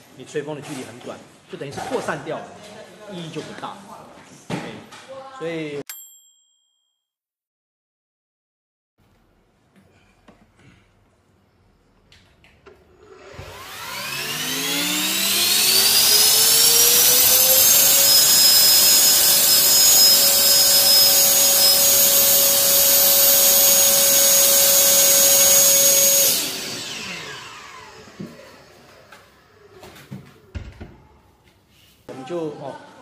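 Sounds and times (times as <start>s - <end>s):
electric blower whine and air rush: 13.0s - 29.8s.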